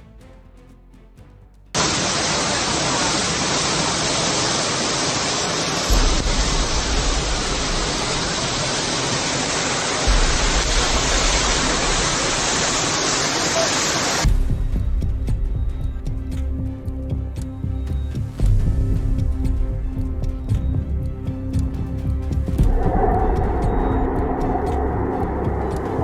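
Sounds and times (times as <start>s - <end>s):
floodwater rushing: 1.8s - 14.3s, 22.6s - 26.0s
deep low rumble: 22.6s - 26.0s.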